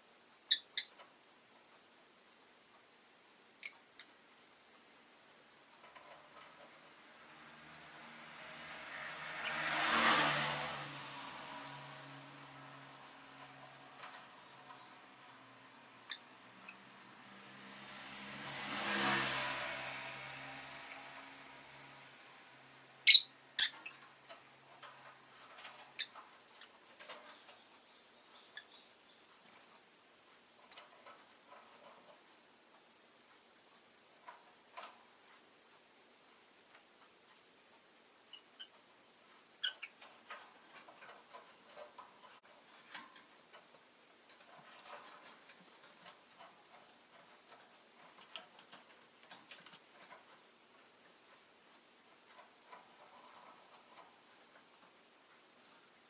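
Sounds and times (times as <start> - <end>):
soft irregular ticks and clicks: 0.0 - 9.8, 10.5 - 18.5, 19.3 - 56.0
quiet hiss: 0.0 - 56.0
lovebird chirps: 0.5 - 0.9, 23.0 - 23.7.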